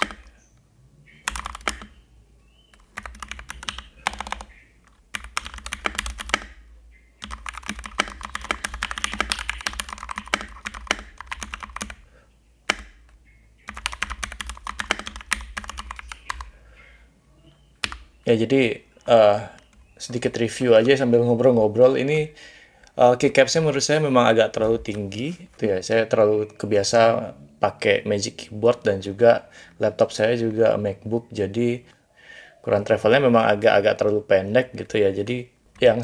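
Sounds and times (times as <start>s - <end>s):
mechanical keyboard typing: 0.0s - 0.3s, 1.3s - 2.0s, 2.7s - 6.6s, 7.2s - 12.0s, 13.7s - 16.5s.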